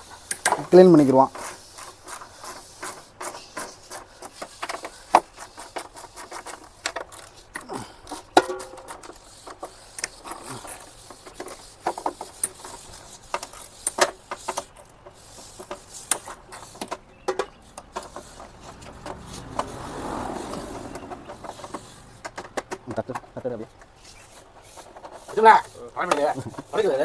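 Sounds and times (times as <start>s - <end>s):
tools clicking and tapping on metal: 0.2s - 1.2s, 3.6s - 19.6s
soft rushing noise: 17.7s - 22.8s.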